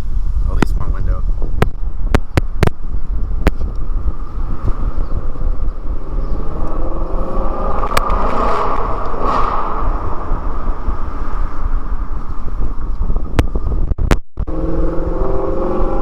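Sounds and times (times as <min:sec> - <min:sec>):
car exhaust rumbling and revving: 0:01.3 - 0:16.0.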